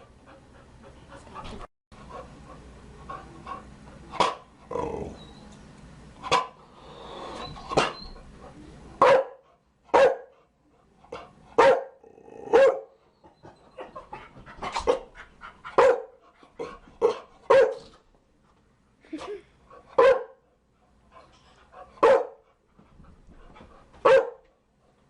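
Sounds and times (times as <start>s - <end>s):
dog barking deeply: 11.6s - 12.9s.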